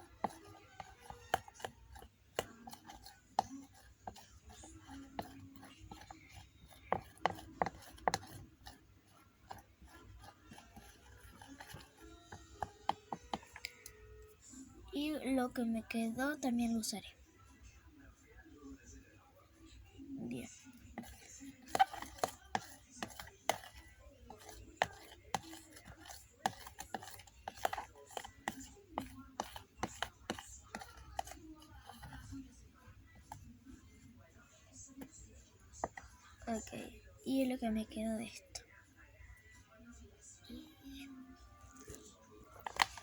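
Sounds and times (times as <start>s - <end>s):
spoon scraping and knocking a bowl: 0.0s - 13.7s, 20.9s - 32.4s, 41.8s - 43.0s.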